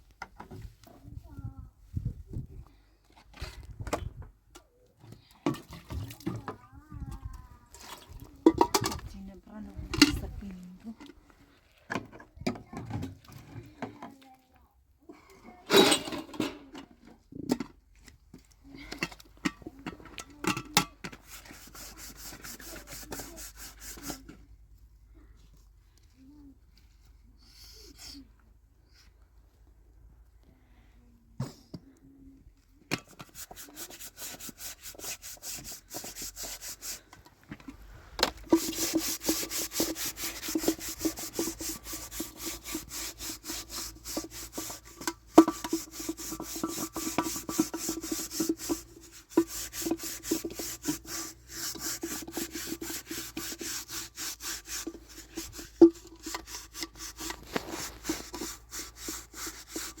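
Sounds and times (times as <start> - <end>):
sawing strokes: 21.2 - 24.3, 33.1 - 37.2, 38.1 - 60.0.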